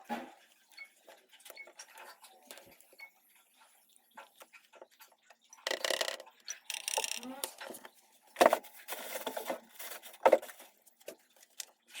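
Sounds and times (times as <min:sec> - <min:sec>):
small tools clicking and clinking: 0:05.6 - 0:07.8.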